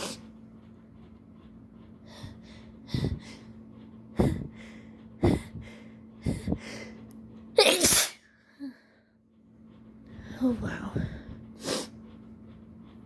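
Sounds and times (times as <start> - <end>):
person sneezing loudly: 7.6 - 8.2.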